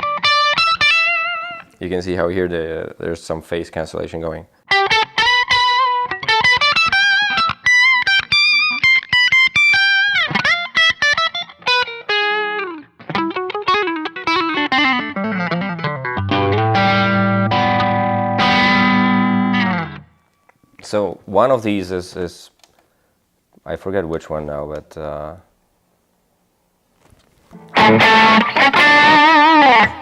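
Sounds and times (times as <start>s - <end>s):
electric guitar playing: 0.0s - 1.8s, 4.7s - 20.2s, 27.5s - 30.0s.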